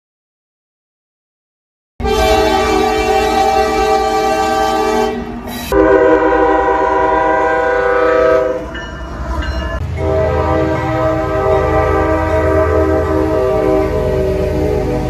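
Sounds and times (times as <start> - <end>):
train air horn blasts: 2.0 - 8.8, 9.9 - 15.0.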